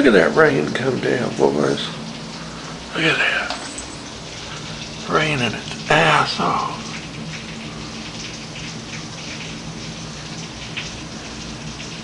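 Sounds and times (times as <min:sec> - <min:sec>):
heavy rain hissing: 0:00.0 - 0:12.0
raindrop ticks: 0:00.0 - 0:12.0.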